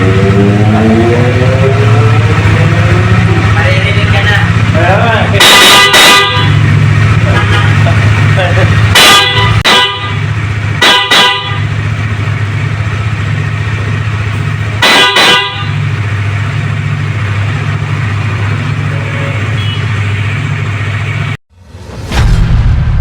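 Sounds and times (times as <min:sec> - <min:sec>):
car horn double beeps: 0:05.4 - 0:06.7, 0:08.9 - 0:11.8, 0:14.8 - 0:15.9, 0:19.2 - 0:20.1.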